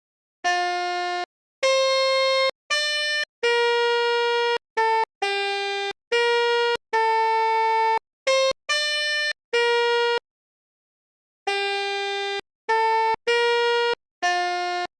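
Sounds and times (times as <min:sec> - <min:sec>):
multi-tone bus air horn tune: 0:00.4 - 0:10.2, 0:11.5 - 0:14.9.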